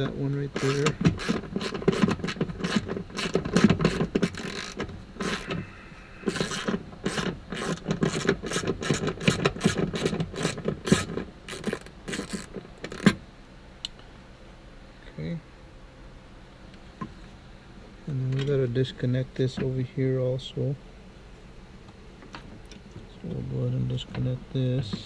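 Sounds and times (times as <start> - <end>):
hand ratchet clicking: 0.5 - 5.6, 6.3 - 13.1.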